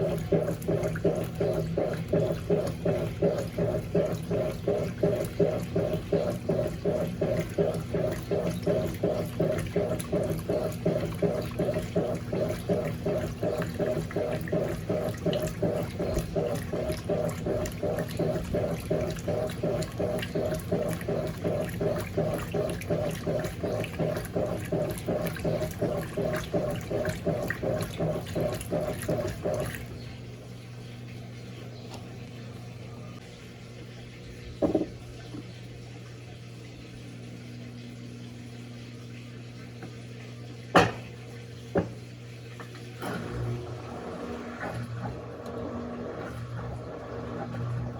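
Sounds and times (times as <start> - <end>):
low motor hum: 0.0 - 47.9
water sloshing in washing machine: 0.0 - 47.9.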